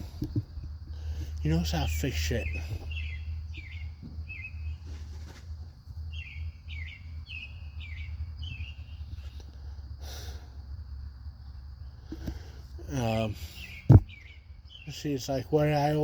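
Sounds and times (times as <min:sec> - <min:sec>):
small bird chirping: 0:00.0 - 0:09.8, 0:11.4 - 0:16.0
steady low hum: 0:00.0 - 0:16.0
brief rustle: 0:04.8 - 0:05.6.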